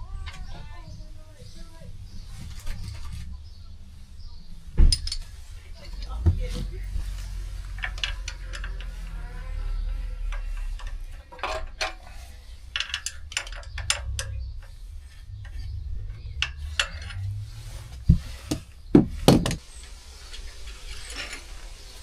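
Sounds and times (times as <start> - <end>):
spanner clinking on metal: 7.7 - 9.2, 10.2 - 17.4
heavier metal knocks: 18.0 - 19.6.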